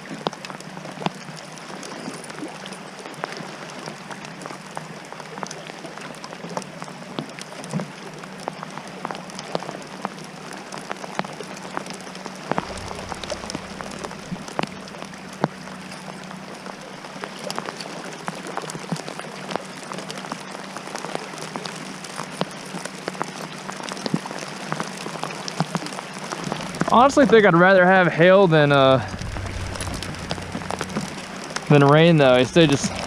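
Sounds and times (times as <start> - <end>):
rain pattering on kayak and water: 0.0 - 33.0
low hum: 12.3 - 17.7, 26.2 - 27.4, 28.2 - 33.0.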